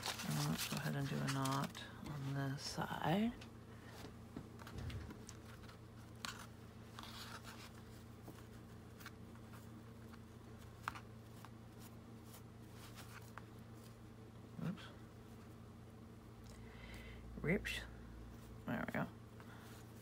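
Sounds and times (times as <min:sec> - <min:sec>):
paper rustling: 0:00.0 - 0:02.7, 0:04.5 - 0:14.0
steady low hum: 0:00.0 - 0:20.0.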